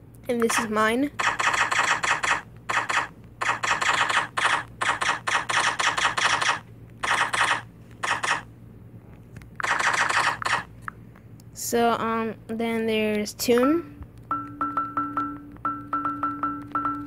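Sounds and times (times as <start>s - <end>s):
laser key-press sound effect: 0.4s - 8.4s, 9.6s - 10.7s.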